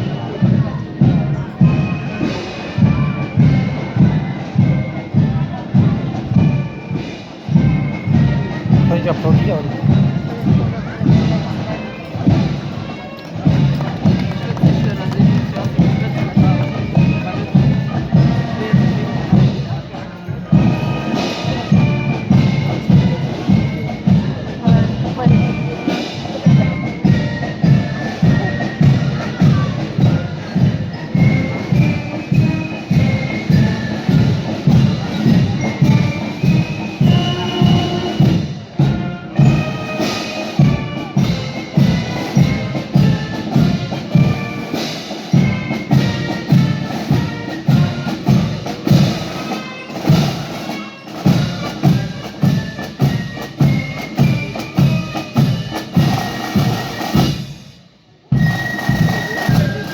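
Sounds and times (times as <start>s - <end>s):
drums keeping steady beat: 0.0s - 59.9s
marching band playing a march: 0.0s - 59.9s.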